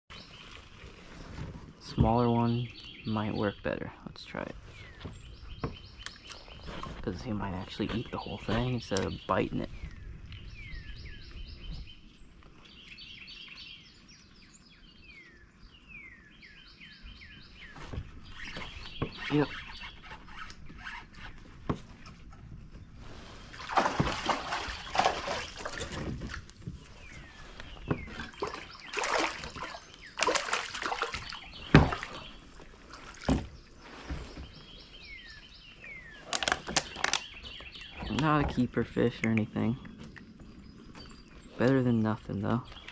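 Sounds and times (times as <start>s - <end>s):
songbird singing: 0.1s - 42.9s
water splashing beside kayak: 23.0s - 35.0s.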